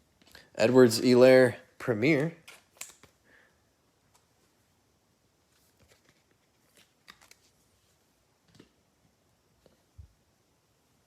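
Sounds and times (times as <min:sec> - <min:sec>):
trading cards rustling and clicking: 0:02.2 - 0:03.2, 0:05.5 - 0:07.8.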